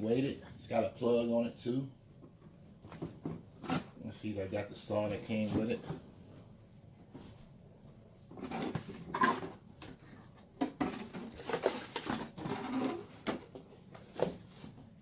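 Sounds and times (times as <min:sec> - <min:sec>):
packaging rustling and scraping: 0:08.3 - 0:15.0.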